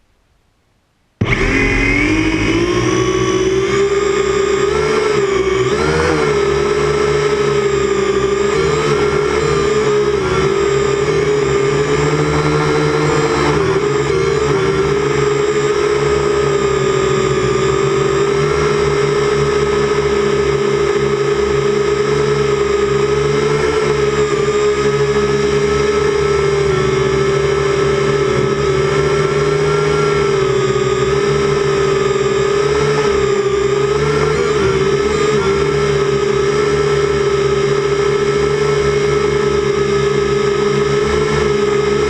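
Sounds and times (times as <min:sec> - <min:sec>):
quadcopter motors humming: 0:01.2 - 0:42.0.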